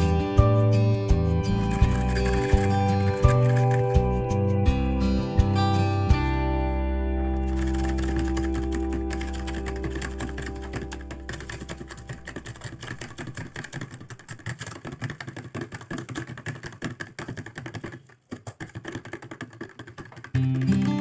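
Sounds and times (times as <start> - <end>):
rapid irregular clicking: 1.6 - 4.1, 7.4 - 21.0.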